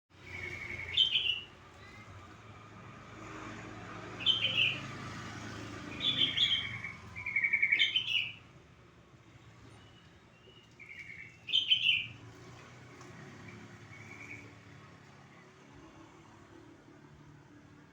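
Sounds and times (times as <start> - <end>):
bird chattering calls: 0.2 - 1.5, 4.2 - 4.8, 6.0 - 8.3, 10.9 - 12.1.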